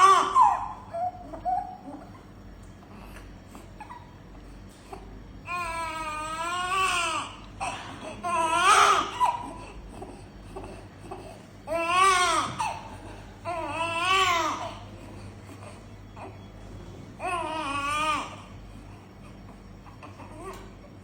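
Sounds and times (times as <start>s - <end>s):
newborn baby crying: 0.0s - 2.1s, 4.9s - 16.5s, 17.2s - 19.0s.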